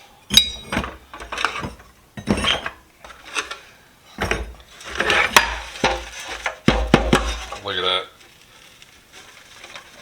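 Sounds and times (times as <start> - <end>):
metal wrenches clanking: 0.3 - 3.6.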